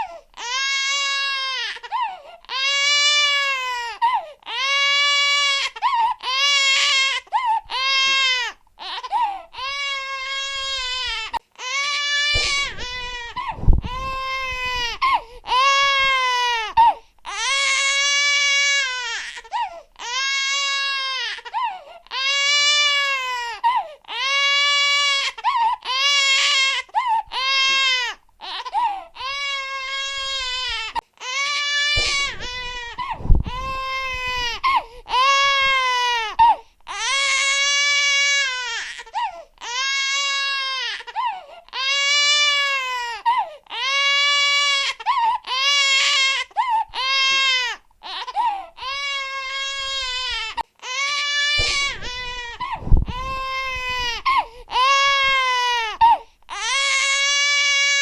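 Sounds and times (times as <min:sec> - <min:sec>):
infant crying: 0:00.0 - 0:58.0
low thump: 0:12.4 - 0:15.2, 0:32.0 - 0:34.9, 0:51.6 - 0:54.4.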